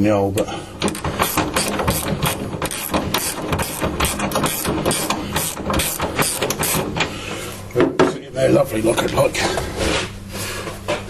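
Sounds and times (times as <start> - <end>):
steady low hum: 0.0 - 11.0
ratchet spanner clicking: 0.8 - 6.9.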